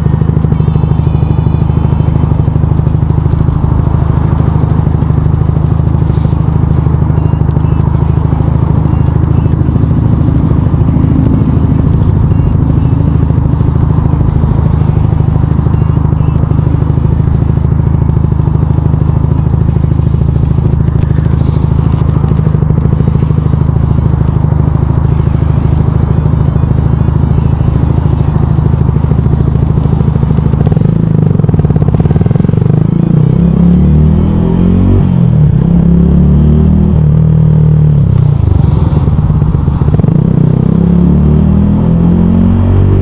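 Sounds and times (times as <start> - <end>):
motorcycle engine running steadily: 0.0 - 43.0.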